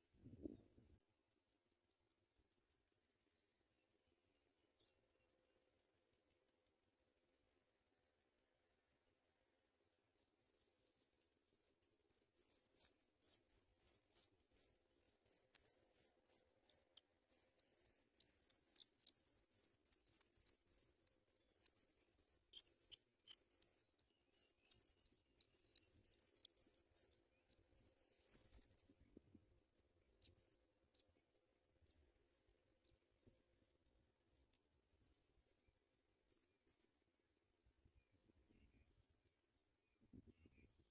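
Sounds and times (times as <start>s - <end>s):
nestlings begging chatter: 12.4s - 27.2s, 27.8s - 28.6s.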